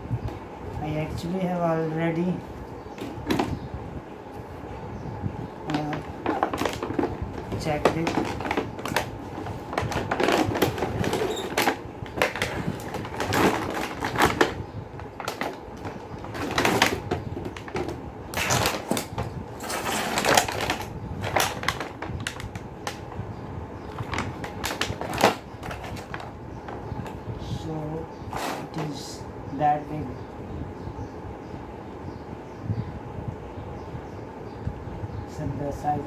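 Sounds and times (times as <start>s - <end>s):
cardboard box and packaging handled: 5.7s - 22.5s, 23.9s - 27.2s.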